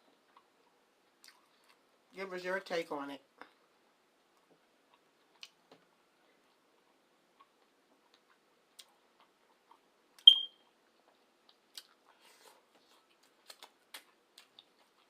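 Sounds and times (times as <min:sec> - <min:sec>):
person chewing: 0:00.1 - 0:01.9, 0:04.3 - 0:05.7, 0:06.3 - 0:09.9, 0:10.9 - 0:15.0
short high-pitched beep: 0:10.3 - 0:10.6.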